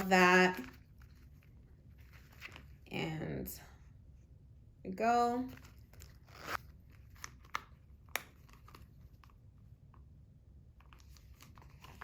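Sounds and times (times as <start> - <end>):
wallet handling clicks and rustles: 5.5 - 10.1, 10.7 - 12.0.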